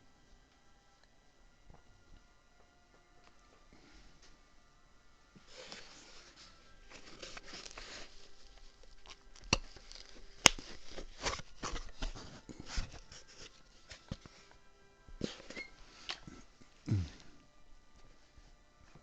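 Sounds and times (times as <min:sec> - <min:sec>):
faint background music: 0:00.0 - 0:19.0
rustling and handling noise: 0:05.3 - 0:19.0.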